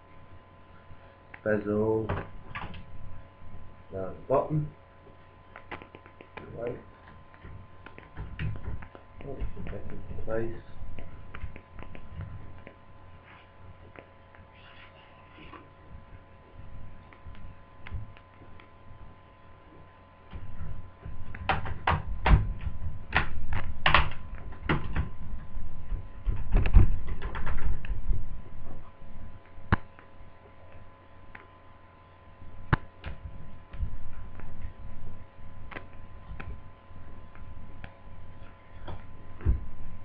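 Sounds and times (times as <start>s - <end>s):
dull thumps: 38.8s - 40.0s.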